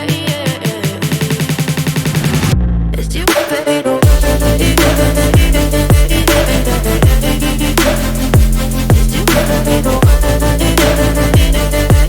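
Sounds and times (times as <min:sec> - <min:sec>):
deep kick drum hits: 0:04.0 - 0:04.4, 0:05.4 - 0:06.3, 0:07.0 - 0:07.3, 0:08.4 - 0:09.3, 0:10.0 - 0:10.4, 0:11.4 - 0:12.0
electronic instrumental music: 0:04.0 - 0:12.0.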